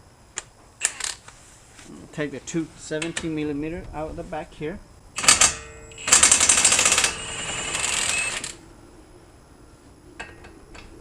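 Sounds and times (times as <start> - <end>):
impact wrench hammering: 5.2 - 7.4.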